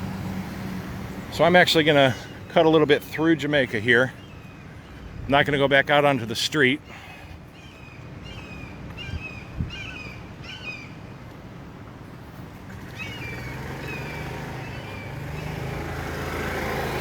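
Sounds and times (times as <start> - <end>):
low vehicle engine hum: 0.0 - 5.1, 11.1 - 17.0
bird chirping: 1.3 - 5.5, 12.8 - 17.0.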